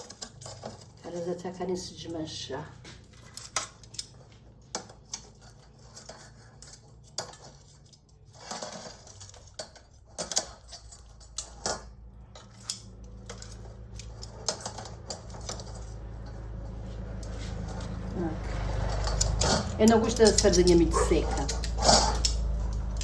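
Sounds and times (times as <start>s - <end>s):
metal utensils clinking on grill: 17.2s - 23.0s.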